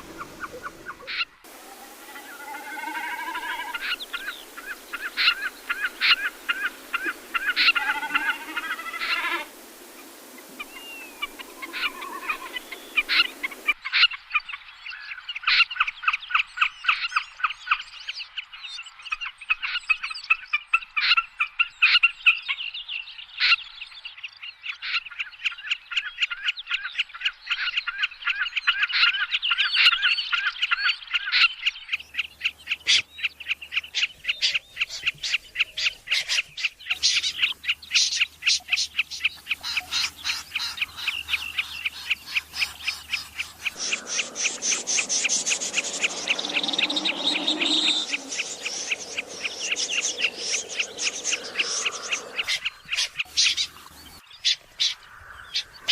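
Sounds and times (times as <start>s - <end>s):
bird chipping notes: 38.2s - 54.2s.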